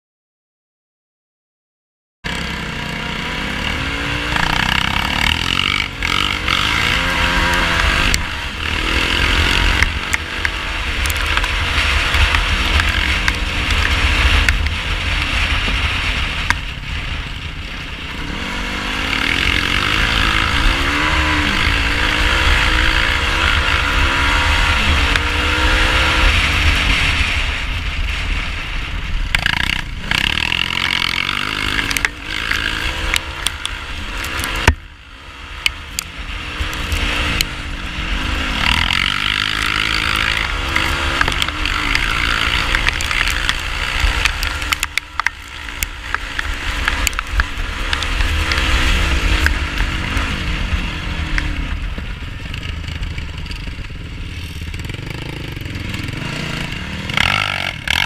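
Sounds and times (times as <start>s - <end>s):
quad engine revving: 2.3s - 16.5s, 18.0s - 27.6s, 29.3s - 58.0s.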